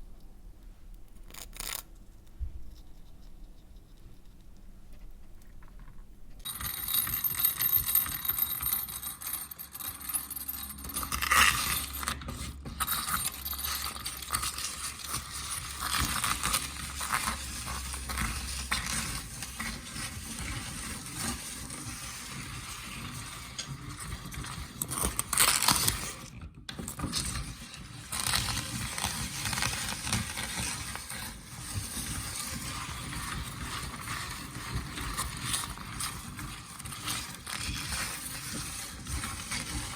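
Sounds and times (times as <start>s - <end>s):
meat grinder crunching meringue: 8.9s - 39.9s.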